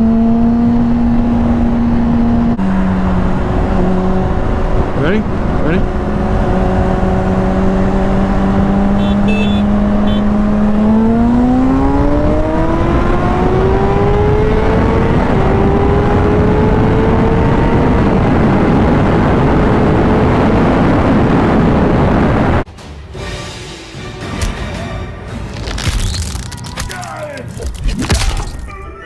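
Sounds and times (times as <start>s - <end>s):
motorcycle engine accelerating: 0.0s - 22.7s
wind rushing over microphone: 0.0s - 22.7s.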